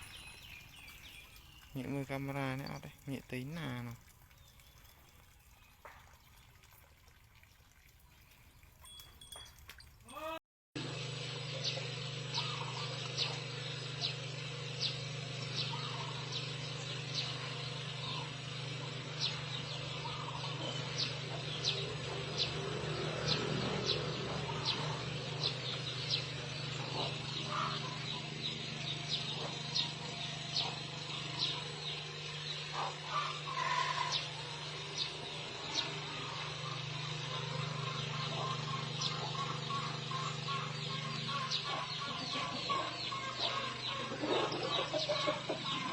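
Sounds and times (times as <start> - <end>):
bird chirping: 0.0 - 5.9
steady low hum: 10.9 - 45.9.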